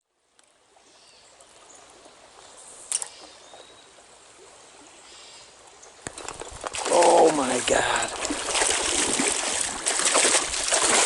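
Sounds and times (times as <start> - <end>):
stream water running: 0.0 - 11.0.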